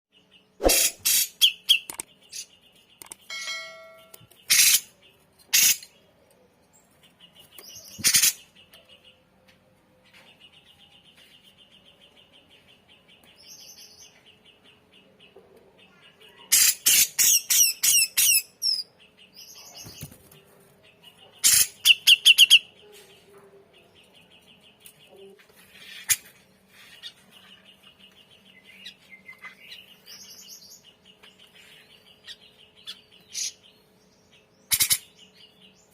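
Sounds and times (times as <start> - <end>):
rapidly repeated bird notes: 0.2 - 6.2, 6.9 - 15.3, 15.9 - 35.9
bird harsh chattering calls: 0.6 - 3.3, 4.3 - 6.0, 7.8 - 8.6, 16.4 - 18.8, 21.4 - 22.7, 34.6 - 35.3.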